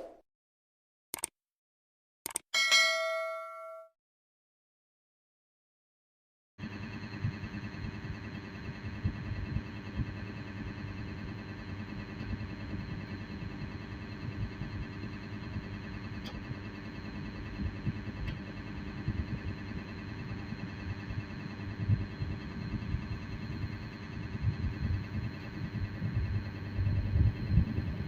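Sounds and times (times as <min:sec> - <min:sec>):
electric fan blower humming: 0:06.6 - 0:28.0.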